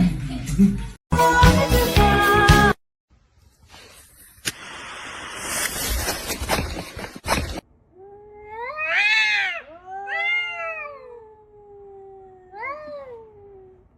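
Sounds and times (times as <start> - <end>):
cat meowing: 8.0 - 13.9.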